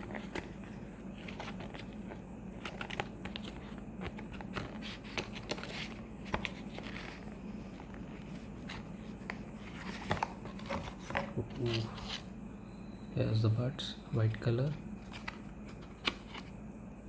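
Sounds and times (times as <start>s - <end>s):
packaging clicks and scrapes: 0.0s - 12.3s
steady low hum: 0.0s - 17.0s.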